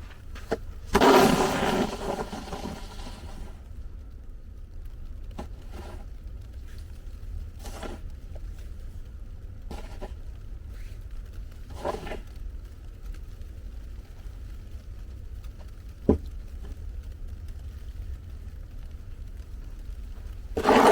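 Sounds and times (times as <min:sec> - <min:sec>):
short scrapes: 0:00.0 - 0:03.6, 0:07.6 - 0:08.0, 0:20.6 - 0:20.9
snowstorm low rumble: 0:00.0 - 0:20.9.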